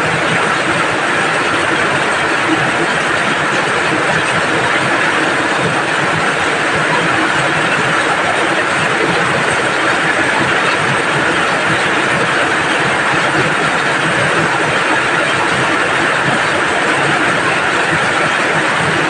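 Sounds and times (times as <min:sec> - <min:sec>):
rain falling steadily: 0:00.0 - 0:19.0.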